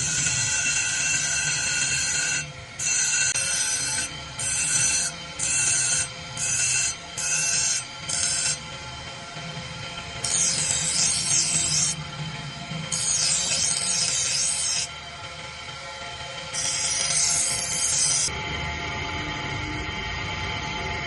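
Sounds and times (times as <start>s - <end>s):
abrasive rasping on steel blade: 0.0s - 8.7s, 10.2s - 12.0s, 12.9s - 14.9s, 16.5s - 18.3s
faint background music: 0.0s - 21.0s.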